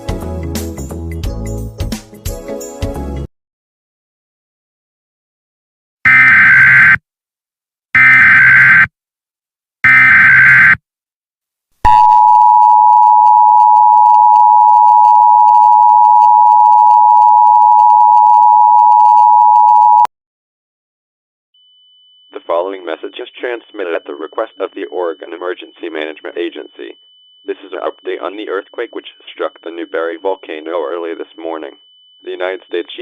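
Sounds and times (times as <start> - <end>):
digital data tone bursts: 6.1 - 7.0, 8.0 - 8.9, 9.9 - 10.8, 22.3 - 33.0.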